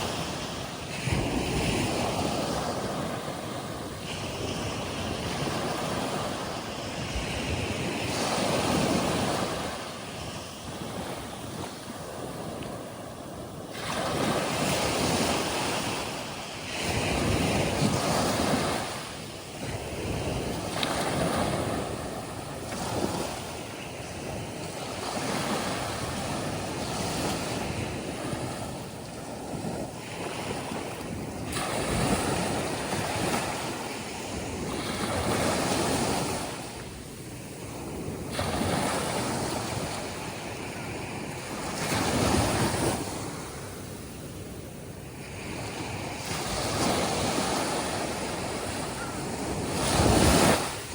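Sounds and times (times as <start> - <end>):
surf breaking on sandy beach: 45.3 - 50.9.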